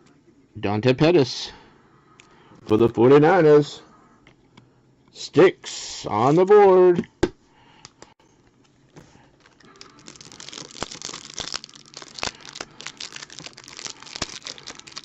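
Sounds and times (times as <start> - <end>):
wrapper tearing and crinkling: 9.4 - 15.0.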